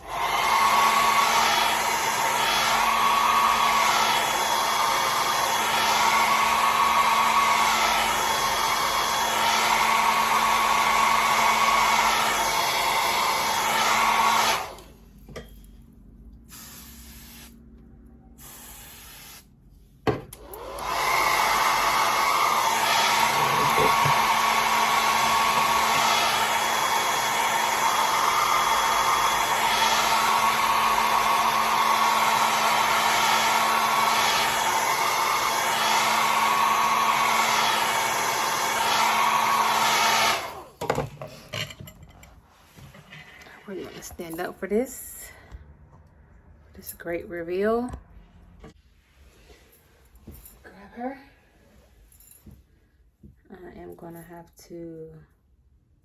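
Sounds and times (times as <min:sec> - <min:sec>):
hair dryer blowing: 0:00.0 - 0:15.1, 0:16.5 - 0:17.6, 0:18.4 - 0:19.5, 0:20.1 - 0:41.1.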